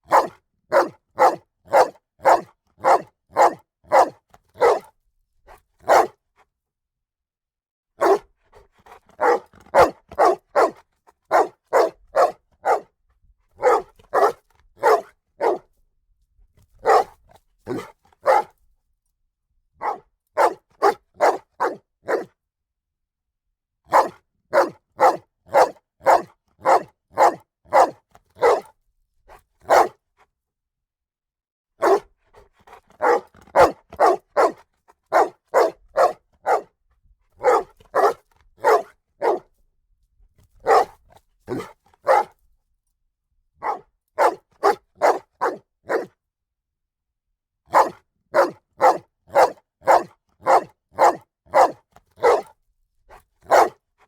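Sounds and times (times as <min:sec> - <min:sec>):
dog barking: 0:00.0 - 0:04.9, 0:05.5 - 0:06.2, 0:08.0 - 0:13.0, 0:13.6 - 0:15.7, 0:16.8 - 0:18.6, 0:19.8 - 0:22.3, 0:23.9 - 0:28.7, 0:29.6 - 0:30.0, 0:31.8 - 0:32.1, 0:32.7 - 0:36.8, 0:37.4 - 0:39.5, 0:40.6 - 0:42.4, 0:43.6 - 0:46.2, 0:47.7 - 0:52.6, 0:53.4 - 0:53.8.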